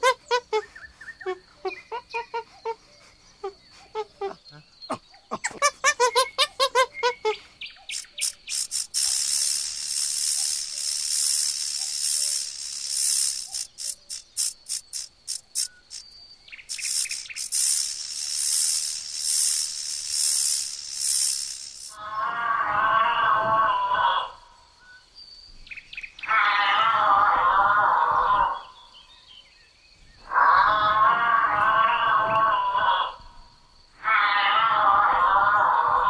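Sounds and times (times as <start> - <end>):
pitched animal calls: 0.0 - 7.5, 26.2 - 28.8, 30.2 - 33.2, 34.0 - 36.0
high insect chorus: 0.0 - 36.0.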